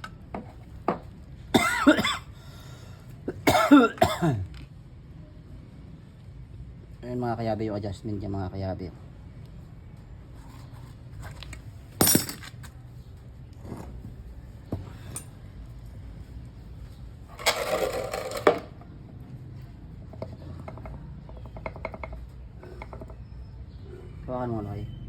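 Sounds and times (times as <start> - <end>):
metal parts rattling: 12.0 - 12.6
metal tools clinking: 12.0 - 12.7, 15.0 - 15.4.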